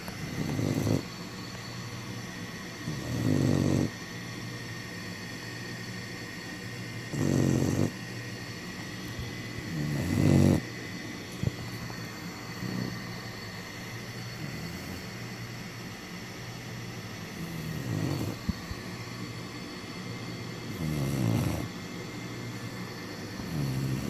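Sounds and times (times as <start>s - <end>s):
puppy snoring: 0.0s - 1.1s, 2.8s - 4.0s, 7.0s - 8.0s, 8.7s - 13.4s, 14.2s - 15.1s, 17.2s - 18.8s, 20.6s - 21.7s, 23.3s - 24.0s.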